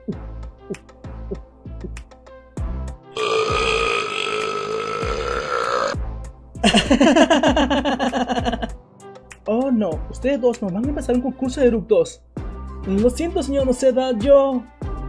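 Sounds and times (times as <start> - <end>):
light background music: 0.0 - 15.0
long burps: 3.2 - 6.0.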